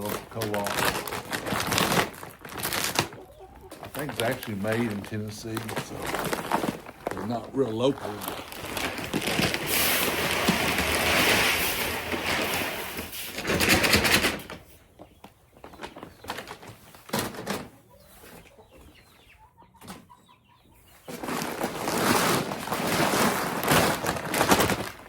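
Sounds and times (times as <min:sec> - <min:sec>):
chickens clucking softly: 0:03.0 - 0:05.0, 0:17.3 - 0:21.3
loud rustling and rushing noise: 0:05.4 - 0:14.2, 0:21.6 - 0:25.0.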